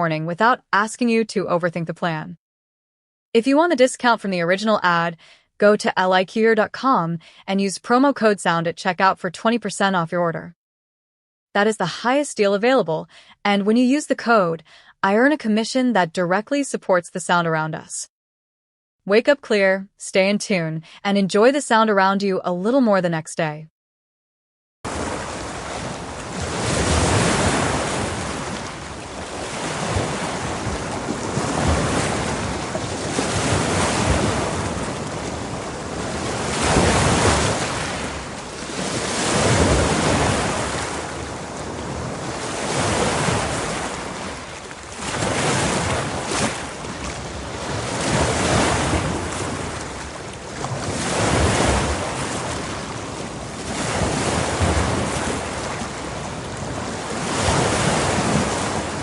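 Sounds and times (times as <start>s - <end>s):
waves breaking: 24.9s - 59.0s.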